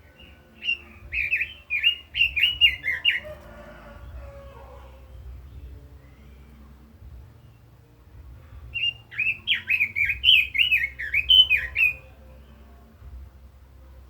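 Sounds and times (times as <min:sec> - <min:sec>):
bird singing warbled phrase: 0:00.0 - 0:03.4, 0:08.8 - 0:12.2.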